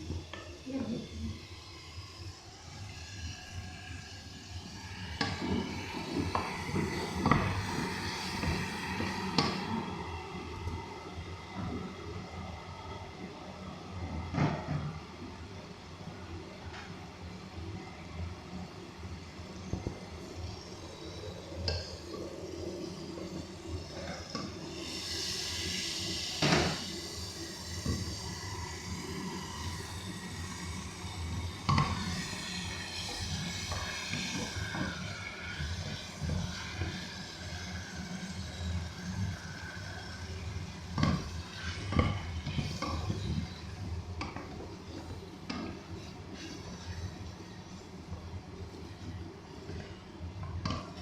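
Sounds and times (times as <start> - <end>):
food hissing in pot: 1.2 - 10.6, 22.3 - 43.8.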